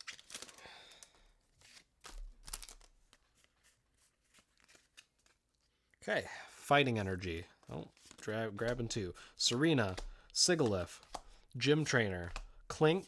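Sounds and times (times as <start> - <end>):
foil wrapper crinkling: 0.0 - 3.6
trading cards being handled: 1.5 - 5.5, 7.0 - 13.0.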